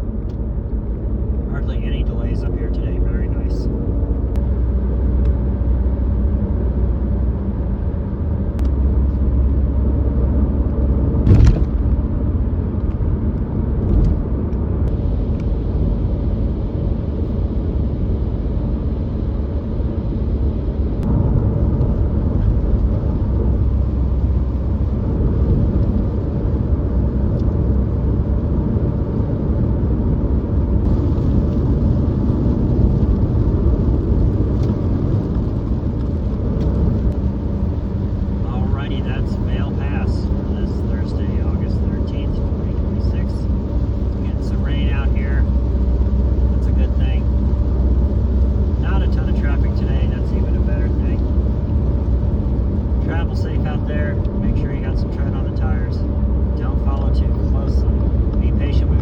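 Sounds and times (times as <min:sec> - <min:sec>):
tyres and engine rumble: 0:00.0 - 0:59.0
sharp knock: 0:11.2 - 0:11.9.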